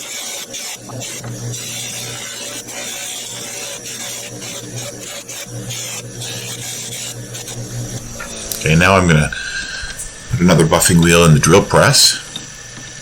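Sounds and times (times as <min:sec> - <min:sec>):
motor hum: 0:00.0 - 0:13.0
wood rubbing on buffing wheel: 0:00.0 - 0:13.0.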